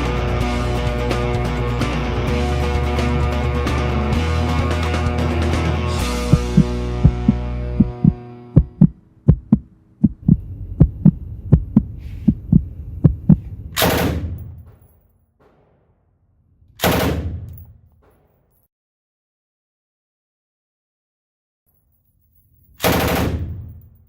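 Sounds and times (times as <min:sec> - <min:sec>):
low thumps: 0:06.2 - 0:14.7.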